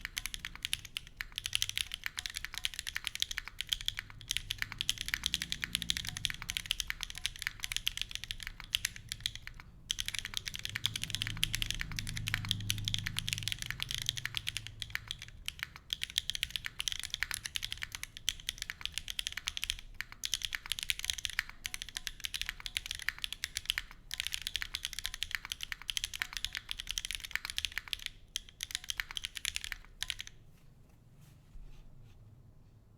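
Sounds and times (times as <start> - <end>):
fast mechanical keyboard typing: 0.0 - 30.4.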